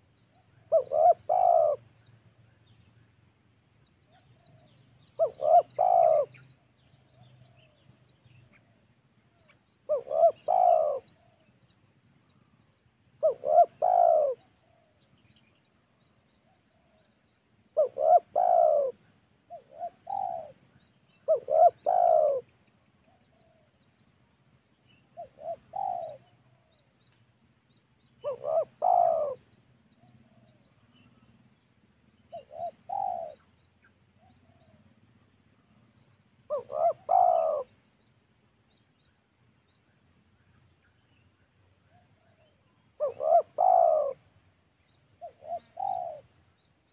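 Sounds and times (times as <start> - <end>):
dove cooing: 0.0 - 2.0, 4.1 - 7.8, 9.5 - 11.5, 13.2 - 15.0, 17.8 - 23.7, 25.0 - 26.9, 28.2 - 31.1, 32.2 - 33.6, 36.5 - 37.8, 41.9 - 44.4, 45.2 - 46.4.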